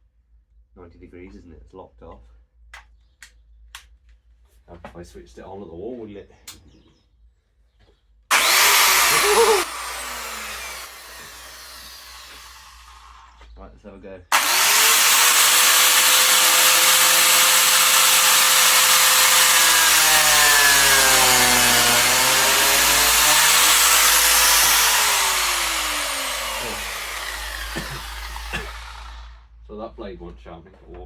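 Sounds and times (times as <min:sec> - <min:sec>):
electric motor whining: 0:08.3 - 0:13.3, 0:14.3 - 0:29.4
blade cutting into wood: 0:08.3 - 0:13.4, 0:14.3 - 0:29.4.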